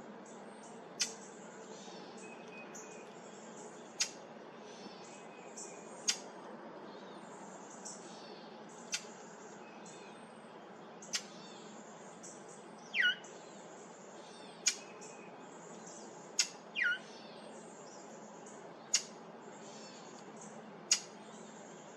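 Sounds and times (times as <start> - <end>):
bird calls sliding downward: 13.0 - 13.2
bird chip notes: 13.0 - 13.2, 16.4 - 17.0.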